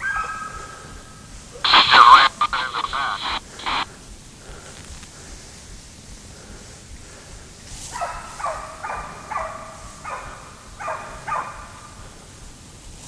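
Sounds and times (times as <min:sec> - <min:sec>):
hounds baying: 0:00.0 - 0:00.7, 0:07.9 - 0:12.0.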